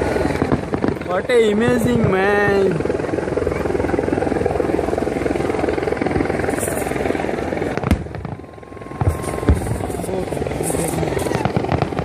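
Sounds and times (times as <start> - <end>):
firework bangs: 0.0 - 2.7, 7.7 - 12.0
fireworks crackling and rumbling: 0.0 - 12.0.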